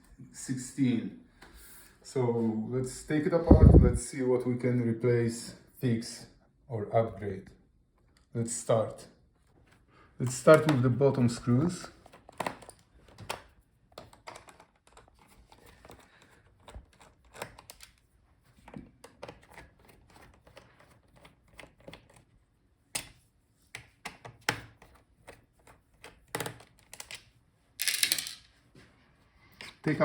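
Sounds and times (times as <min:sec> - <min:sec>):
screwdriver clicking on plastic case: 0:12.0 - 0:18.0.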